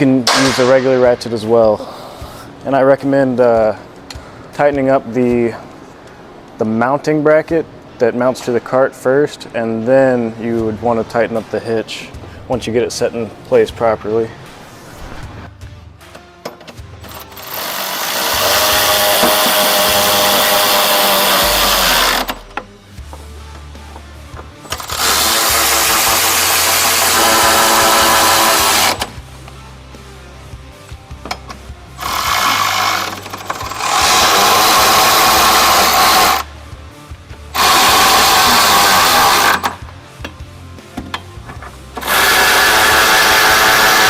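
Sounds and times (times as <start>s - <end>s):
electric ratchet running: 17.0s - 22.6s, 24.7s - 29.2s, 32.0s - 36.5s, 37.5s - 39.8s, 42.0s - 44.0s.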